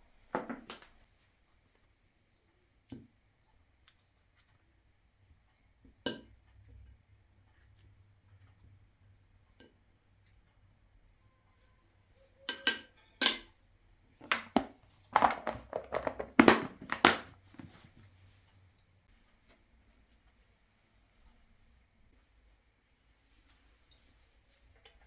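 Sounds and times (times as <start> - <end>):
dishes and cutlery clinking: 12.5 - 13.5.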